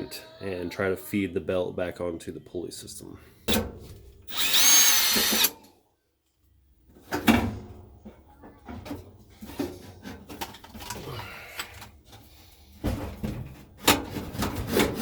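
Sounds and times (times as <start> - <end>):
cordless drill whirring: 4.3 - 5.5
knocks and rattles of parts handled: 7.0 - 11.0.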